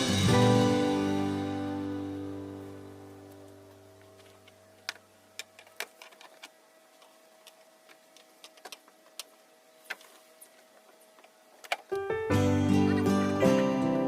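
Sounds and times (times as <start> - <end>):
guitar music: 0.0 - 4.5, 11.9 - 14.0
faint steady hum: 0.6 - 14.0.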